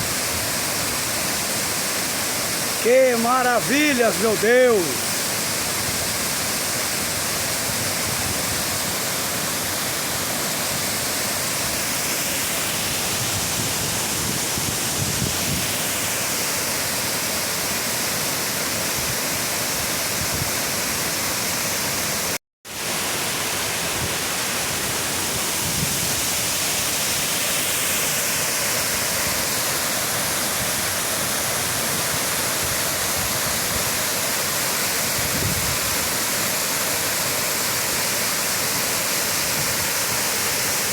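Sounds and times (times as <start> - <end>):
waterfall rushing: 0.0 - 40.9.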